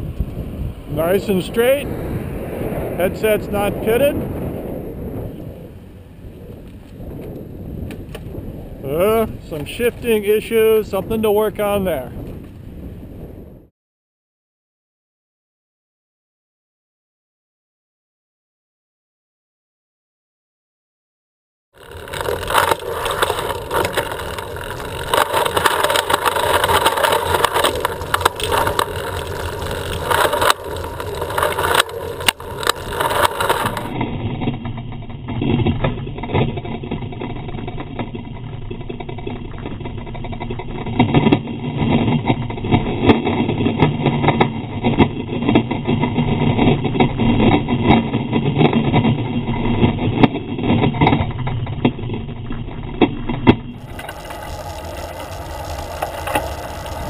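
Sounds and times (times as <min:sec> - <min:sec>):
rush of moving air: 0:00.0 - 0:09.6
tyres on pavement: 0:05.2 - 0:13.0, 0:21.8 - 0:57.0
road traffic: 0:21.8 - 0:34.0, 0:53.8 - 0:57.0.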